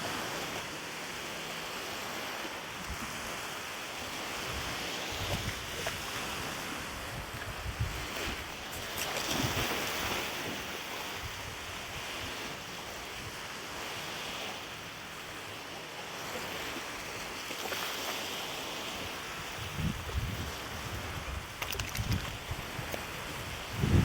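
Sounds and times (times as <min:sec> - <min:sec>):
lake waves washing: 0:00.0 - 0:24.0
wind gusts rumbling on microphone: 0:04.1 - 0:13.5, 0:18.9 - 0:24.0
wind blowing: 0:04.2 - 0:12.2, 0:18.9 - 0:24.0.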